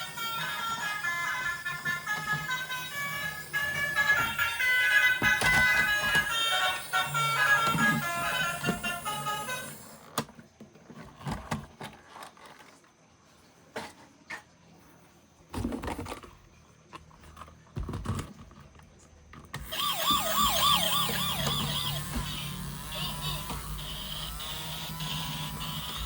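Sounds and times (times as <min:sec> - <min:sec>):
toy electronic siren wailing: 0:00.0 - 0:10.0, 0:19.6 - 0:26.0
plastic toys being handled: 0:00.0 - 0:12.9.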